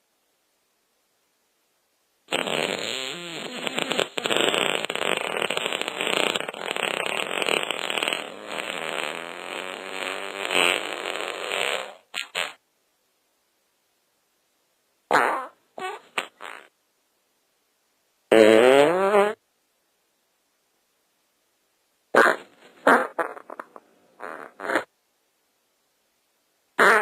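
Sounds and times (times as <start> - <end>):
long wavering fart sound: 2.3 - 12.6, 22.2 - 24.9
short fart toots: 2.3 - 12.6, 15.1 - 16.7, 18.3 - 19.4, 22.1 - 24.9, 26.8 - 27.0.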